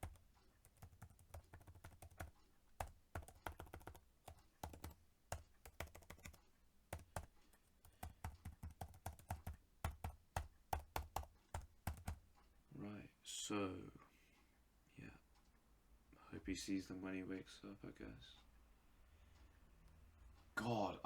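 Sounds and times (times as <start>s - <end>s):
computer keyboard typing: 0.0s - 12.2s.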